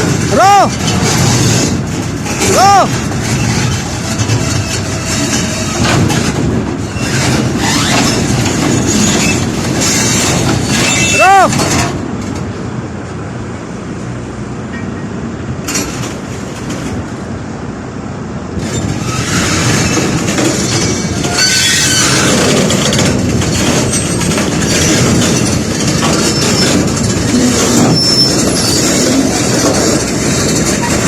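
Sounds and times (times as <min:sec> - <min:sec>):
steel tracks clanking and squealing: 0:00.0 - 0:12.6, 0:14.6 - 0:17.3, 0:18.6 - 0:31.0
excavator engine running: 0:15.1 - 0:31.0.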